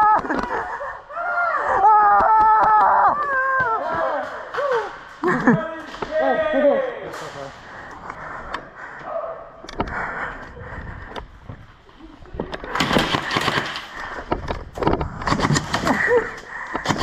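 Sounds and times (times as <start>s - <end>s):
people shouting: 1.1s - 5.2s
airsoft guns firing: 12.7s - 14.4s, 15.2s - 17.0s.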